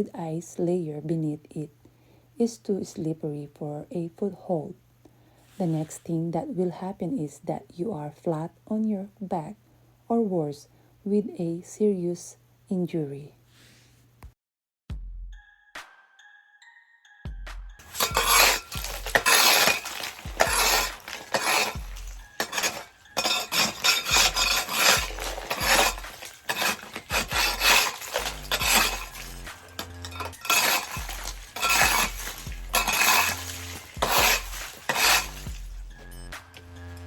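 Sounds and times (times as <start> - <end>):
scraper chopping at ice: 17.8 - 35.8.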